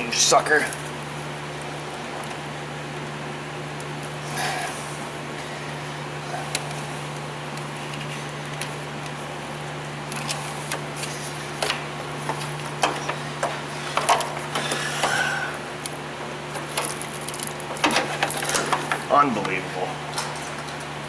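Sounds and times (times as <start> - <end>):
steady low hum: 0.0 - 21.0
hands clicking and scraping on wiring: 10.1 - 15.2, 15.8 - 20.9.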